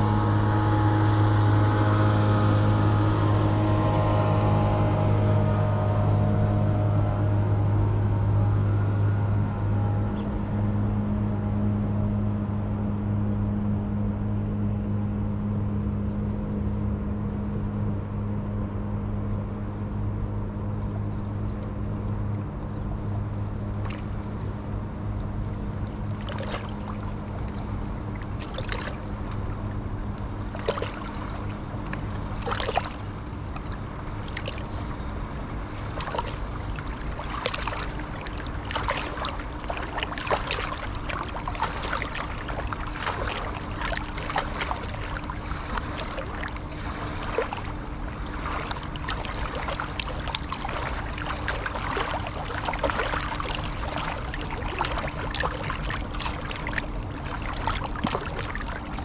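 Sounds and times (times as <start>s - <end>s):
water splashing and lapping: 0.0s - 9.3s, 23.3s - 59.0s
motorboat engine humming: 0.0s - 59.0s.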